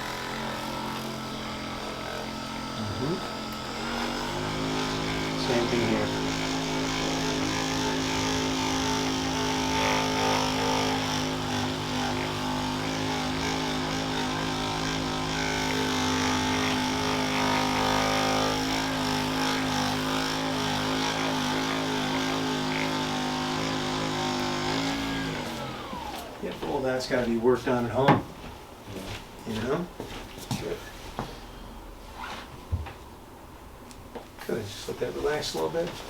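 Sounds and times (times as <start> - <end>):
small electric motor humming: 0.0 - 26.4.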